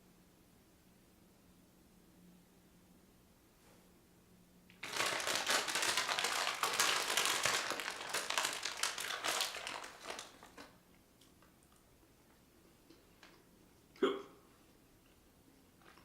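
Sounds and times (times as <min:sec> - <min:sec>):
plastic packaging crinkling: 0:04.7 - 0:10.8.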